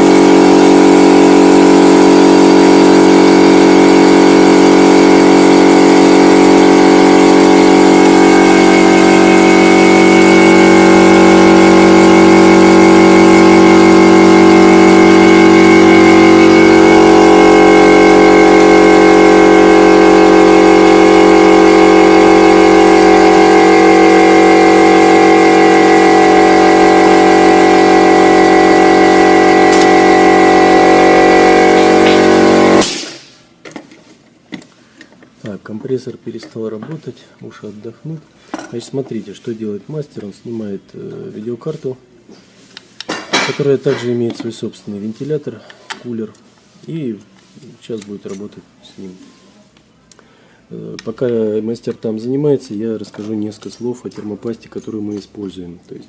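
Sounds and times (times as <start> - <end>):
air compressor humming: 0.0 - 35.7.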